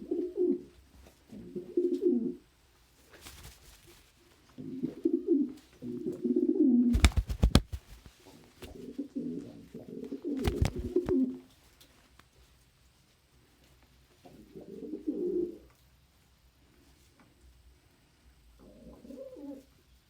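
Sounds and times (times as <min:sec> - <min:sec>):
pigeons cooing: 0:04.6 - 0:06.9, 0:14.3 - 0:15.6, 0:18.6 - 0:19.7.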